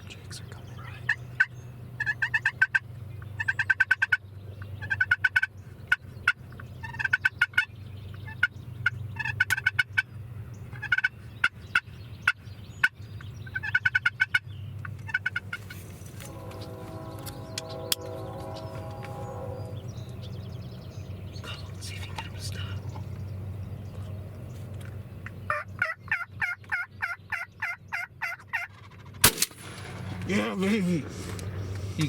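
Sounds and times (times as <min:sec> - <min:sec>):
turkeys gobbling: 0:01.4 - 0:02.8, 0:04.8 - 0:05.5, 0:06.2 - 0:07.7, 0:09.2 - 0:10.0, 0:10.8 - 0:11.1, 0:13.5 - 0:14.4, 0:15.0 - 0:15.7, 0:25.5 - 0:29.4.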